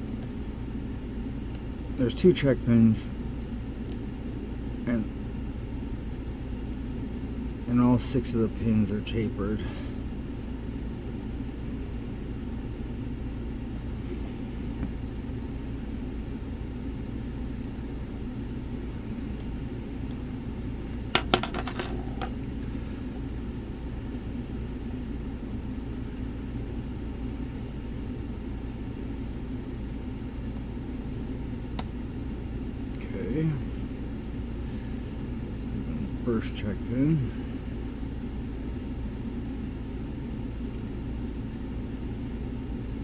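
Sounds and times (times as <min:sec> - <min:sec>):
low hum: 0:03.0 - 0:36.4.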